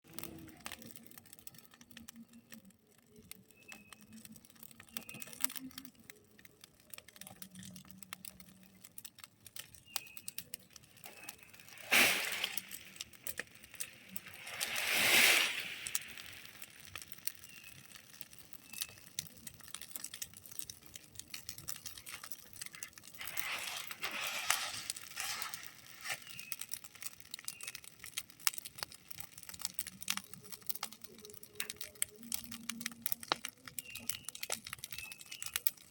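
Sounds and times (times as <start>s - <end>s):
cooking fire crackling: 0.0s - 35.9s
flames rushing: 10.7s - 27.7s.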